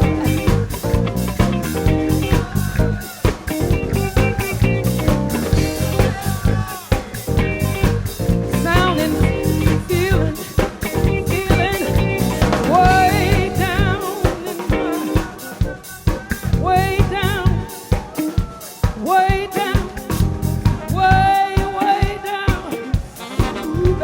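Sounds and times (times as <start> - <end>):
soul-funk music: 0.0 - 24.0.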